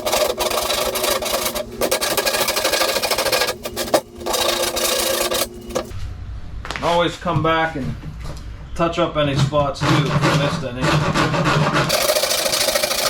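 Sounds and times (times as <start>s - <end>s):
hand file rasping on plastic: 0.0s - 5.9s, 9.4s - 13.0s.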